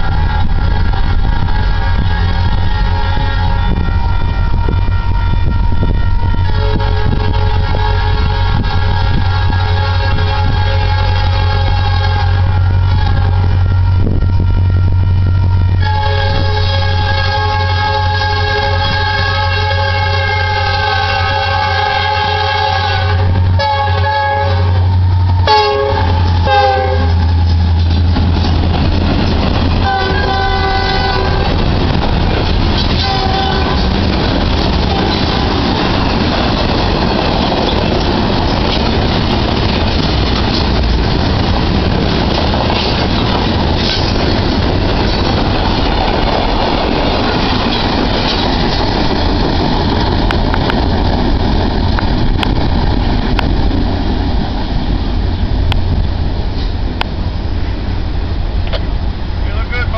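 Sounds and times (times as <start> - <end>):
train horn blasts: 0.0 - 28.0, 29.6 - 31.8, 32.7 - 36.2
freight cars rumbling past: 0.0 - 59.9
wheels clicking over rail joints: 27.2 - 53.8.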